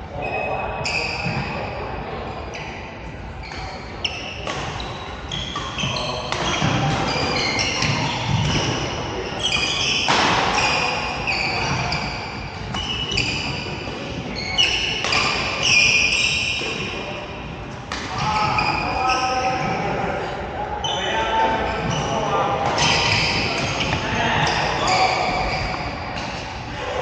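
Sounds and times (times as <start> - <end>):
players' voices: 0.0 - 27.0
shoes squeaking on court floor: 0.2 - 1.8, 3.4 - 19.8, 20.8 - 26.6
racket hitting shuttlecock: 4.2 - 4.8.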